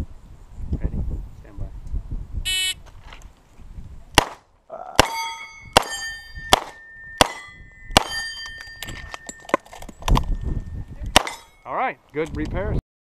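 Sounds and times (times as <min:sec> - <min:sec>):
steel target plate clanging: 0:05.0 - 0:10.3, 0:11.1 - 0:11.7.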